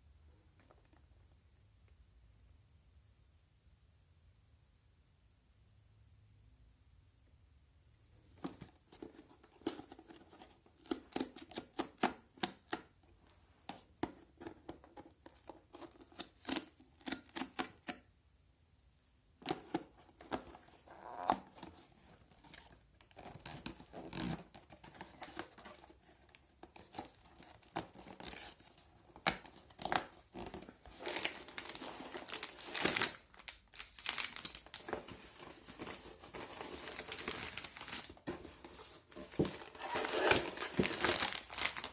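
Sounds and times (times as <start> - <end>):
packaging tearing and crinkling: 29.3 - 38.3, 39.3 - 41.9.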